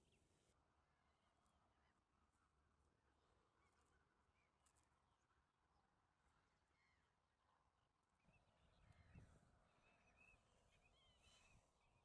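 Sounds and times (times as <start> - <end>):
faint bird calls: 8.6 - 12.0.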